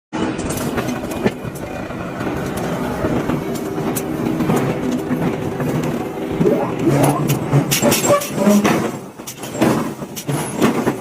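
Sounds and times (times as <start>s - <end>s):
machinery running: 0.2s - 9.2s.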